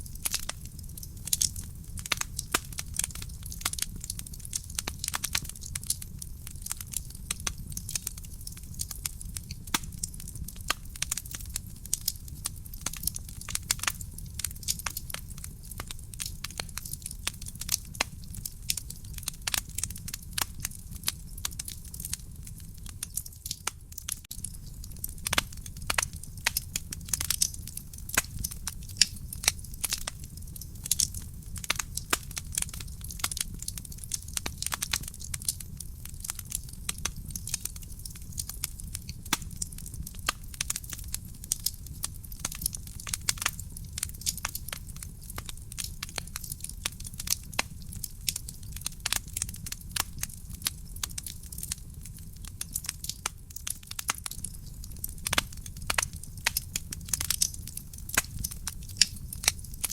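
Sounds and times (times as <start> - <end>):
low rumble of flames: 0.0 - 59.9
wood fire crackling and popping: 0.0 - 59.9.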